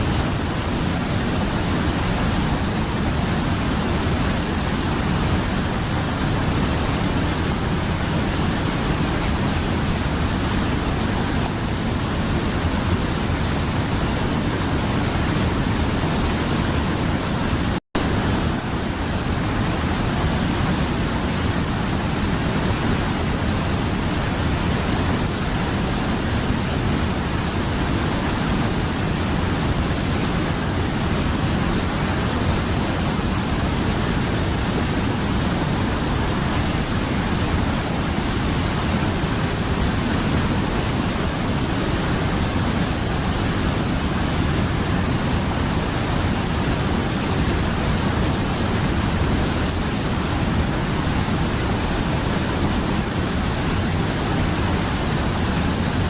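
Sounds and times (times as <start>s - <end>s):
river flowing: 0.0s - 56.0s.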